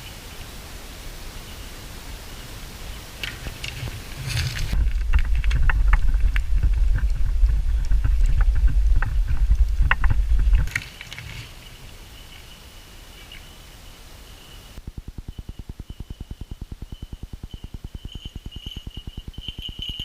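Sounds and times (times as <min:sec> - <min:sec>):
faint hiss: 0:00.0 - 0:05.0, 0:10.6 - 0:20.0
rapid low throbbing interference: 0:01.9 - 0:10.8, 0:14.8 - 0:20.0
thin steady tone: 0:10.8 - 0:20.0.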